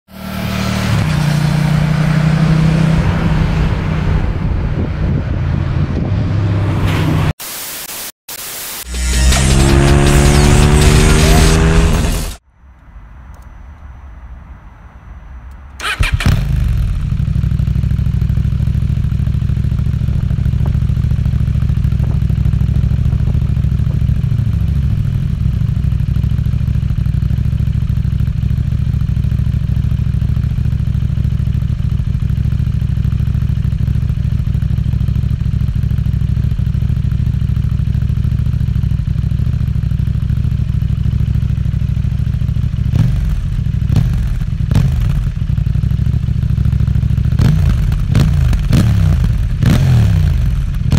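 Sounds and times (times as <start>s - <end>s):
motorcycle engine idling: 15.8s - 50.9s.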